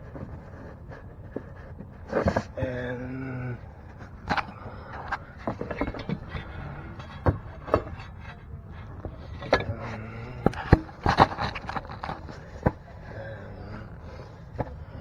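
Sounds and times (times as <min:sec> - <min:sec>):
clicks and knocks of plastic parts: 0:04.3 - 0:12.9.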